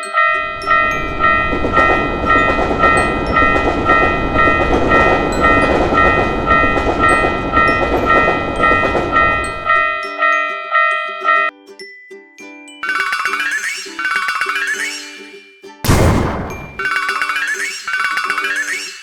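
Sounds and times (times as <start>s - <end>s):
railroad crossing bell ringing: 0.0s - 11.5s, 12.8s - 15.4s, 16.5s - 19.0s
diesel train rumble: 0.3s - 10.0s.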